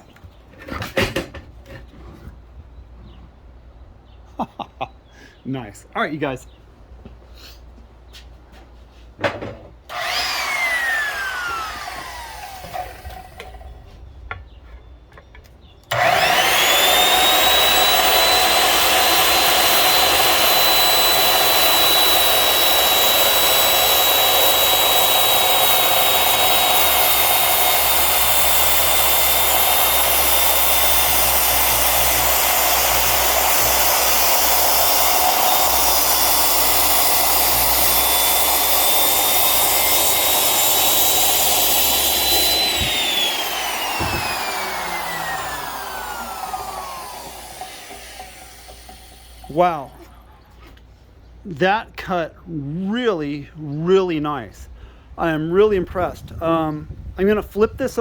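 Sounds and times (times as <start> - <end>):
saw clicks: 9.9 - 13.6, 15.8 - 49.9
circular saw whine: 9.9 - 14.0, 15.8 - 50.2.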